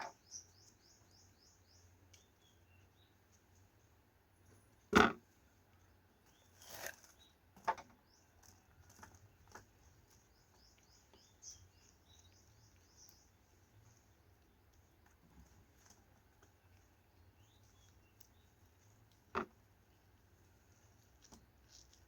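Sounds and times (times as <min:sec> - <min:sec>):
faint high chirping: 0:09.8 - 0:14.8.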